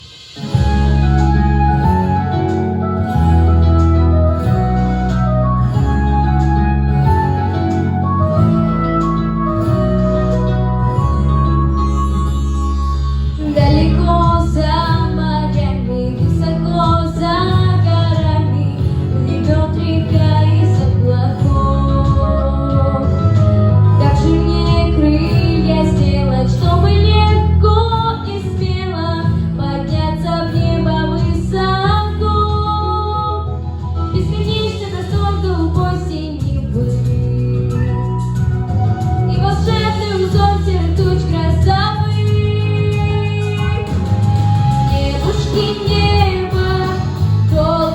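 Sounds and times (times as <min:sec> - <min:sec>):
instrumental accompaniment: 0:00.0 - 0:47.9
woman singing: 0:13.4 - 0:38.6, 0:39.3 - 0:47.9.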